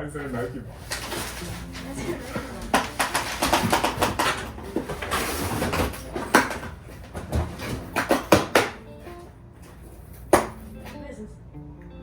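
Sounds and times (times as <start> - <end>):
cardboard packaging rustling: 0.2 - 8.6
sharp knocks: 7.4 - 8.8.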